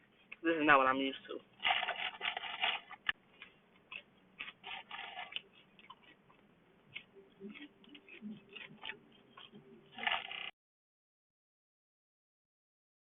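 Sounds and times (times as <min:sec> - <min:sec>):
chewing and crunching food: 0:01.6 - 0:10.5.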